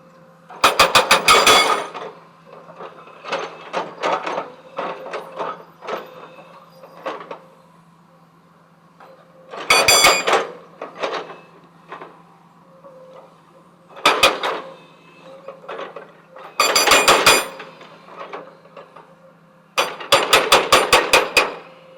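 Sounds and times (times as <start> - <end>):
heavy machinery clanking: 0.6 - 7.4, 9.0 - 12.2, 14.0 - 19.1, 19.8 - 21.7.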